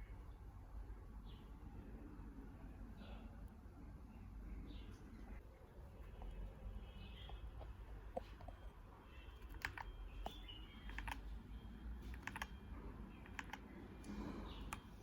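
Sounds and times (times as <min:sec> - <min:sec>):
mechanical keyboard clacks: 0:09.5 - 0:09.9, 0:10.9 - 0:11.2, 0:12.1 - 0:12.5, 0:13.2 - 0:13.6.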